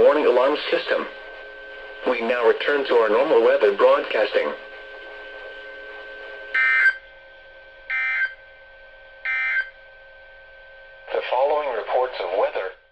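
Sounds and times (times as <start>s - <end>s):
digital data tone bursts: 6.6s - 7.0s, 7.9s - 8.4s, 9.2s - 9.7s.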